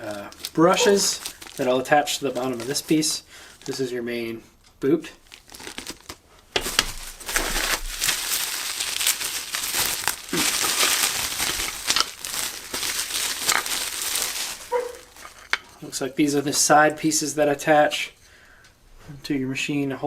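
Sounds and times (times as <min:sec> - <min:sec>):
plastic packaging crinkling: 0:00.0 - 0:03.9, 0:05.2 - 0:15.9.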